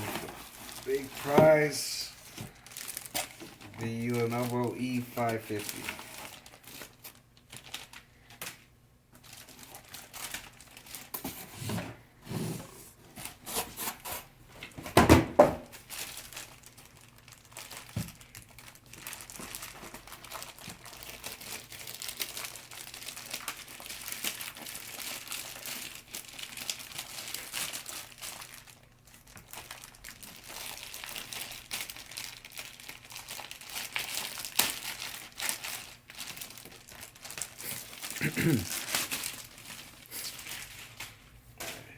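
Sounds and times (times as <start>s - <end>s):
packaging crinkling and rustling: 0.0s - 14.9s, 15.6s - 41.8s
packaging tearing: 15.8s - 41.0s.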